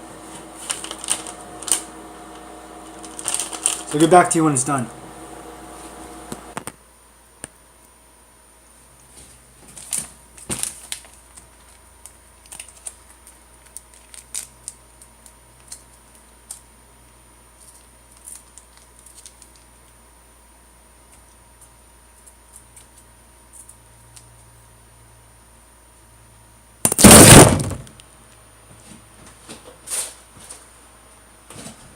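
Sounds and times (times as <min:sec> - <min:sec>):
faint steady hum: 0:00.0 - 0:09.4.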